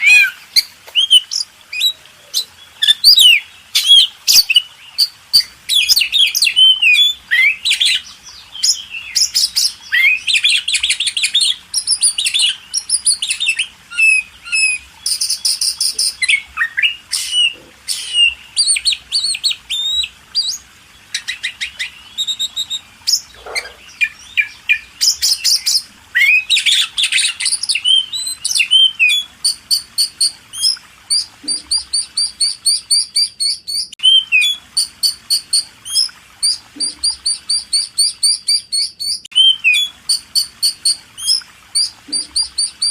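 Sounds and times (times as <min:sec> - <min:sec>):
small birds chirping and trilling: 0:00.0 - 0:42.9.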